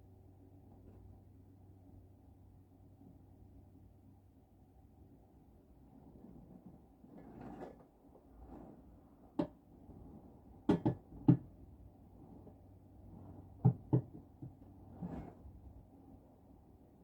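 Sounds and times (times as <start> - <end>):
soft scratching: 5.6 - 10.6, 11.5 - 15.9.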